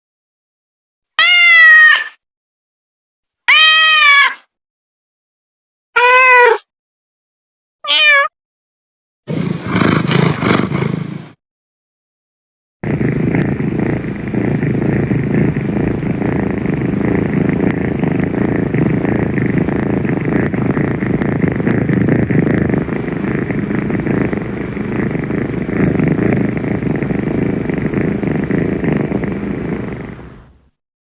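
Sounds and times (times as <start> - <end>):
cat purring: 9.3 - 11.4, 12.8 - 30.8.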